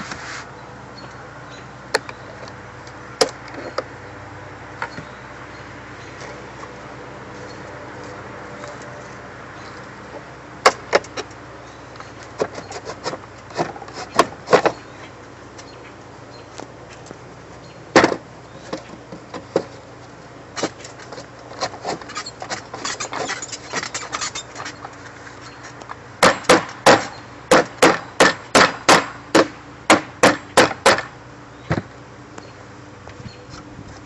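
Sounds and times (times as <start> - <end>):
hammer striking wood: 26.2 - 31.1.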